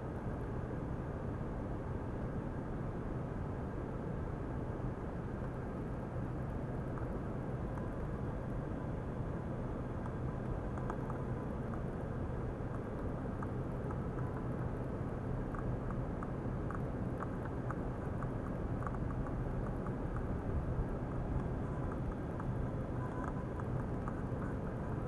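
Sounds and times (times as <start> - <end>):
small ticks and pops: 6.4 - 25.0.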